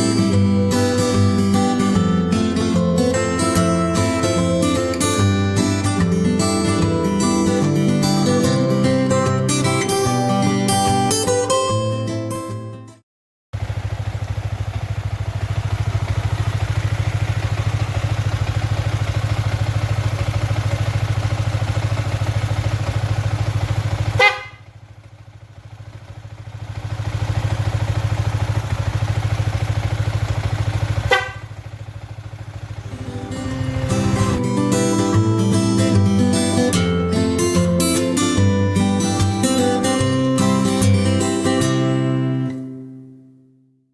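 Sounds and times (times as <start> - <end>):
motorcycle engine idling: 13.6 - 39.6
short horn toot: 24.2 - 24.6, 31.0 - 31.5.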